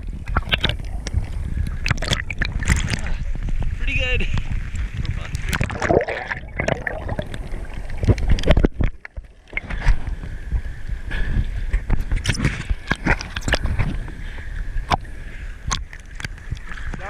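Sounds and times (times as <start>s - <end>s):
water splashing and sloshing: 0.0s - 17.0s.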